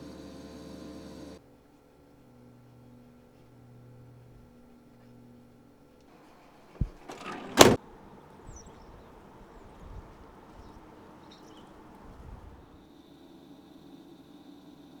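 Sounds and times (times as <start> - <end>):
sliding door along track: 6.2 - 12.8
van door slamming: 6.7 - 11.0
van door latch click: 6.8 - 7.8.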